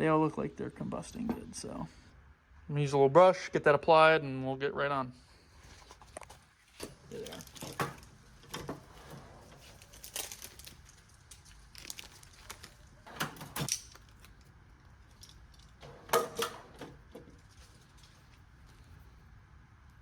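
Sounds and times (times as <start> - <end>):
tools clicking and clattering: 6.2 - 18.9.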